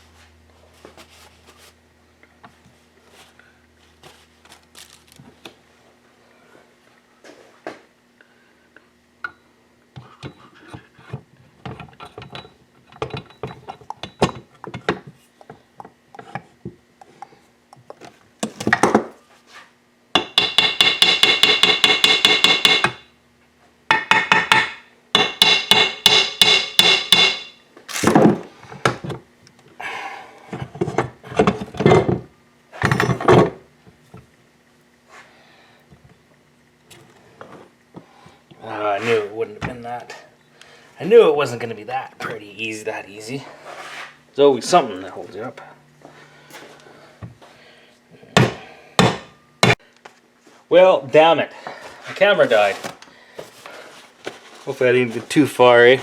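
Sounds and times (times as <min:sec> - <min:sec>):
hand tools tapping and knocking: 0:20.2 - 0:23.0.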